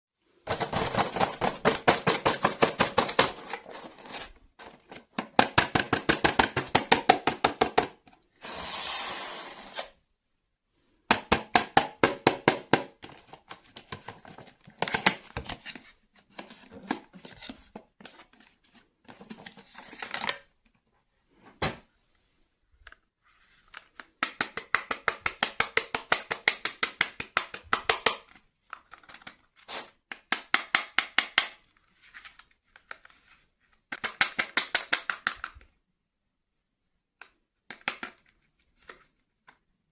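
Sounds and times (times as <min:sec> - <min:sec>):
hissing scrape: 0:08.4 - 0:09.9.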